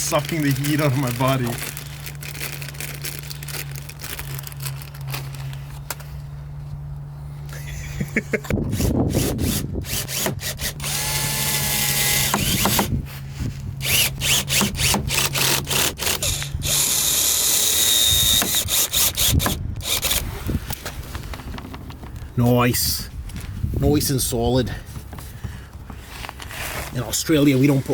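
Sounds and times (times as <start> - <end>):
power drill driving screws: 8.7 - 13.0, 13.8 - 20.4.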